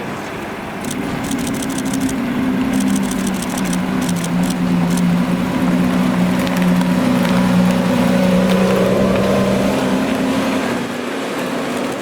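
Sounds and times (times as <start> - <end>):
car engine running at low revs: 0.7 - 12.0
light rapid ticking: 0.8 - 7.8.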